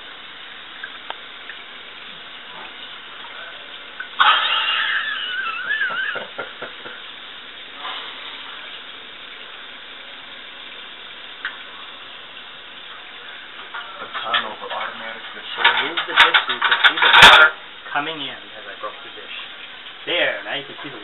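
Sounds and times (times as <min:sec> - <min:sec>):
dishwasher running: 0:00.0 - 0:21.0
crockery clattering: 0:13.7 - 0:17.6.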